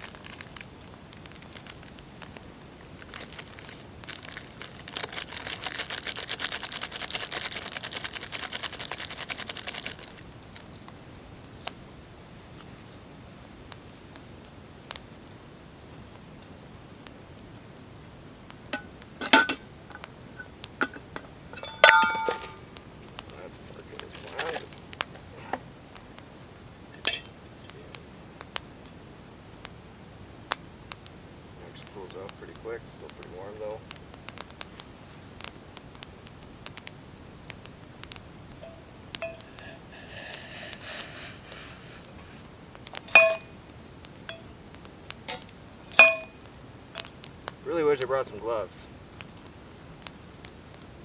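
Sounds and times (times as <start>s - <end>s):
rapid even clicking: 3.3s - 10.9s
utensil clinking on metal pot: 18.8s - 22.6s, 27.0s - 27.3s, 38.6s - 39.8s, 43.0s - 43.5s, 44.3s - 44.5s, 45.3s - 46.4s.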